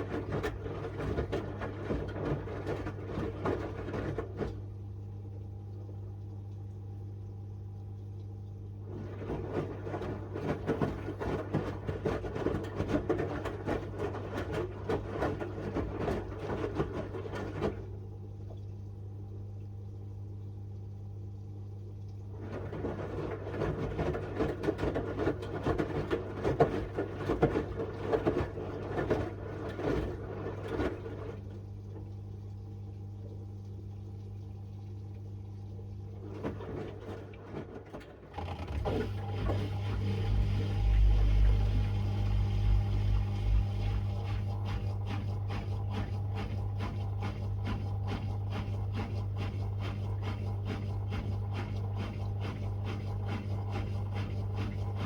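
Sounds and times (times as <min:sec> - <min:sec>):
washing machine drum tumbling: 0:36.5 - 0:50.6
steady low hum: 0:38.9 - 0:55.0.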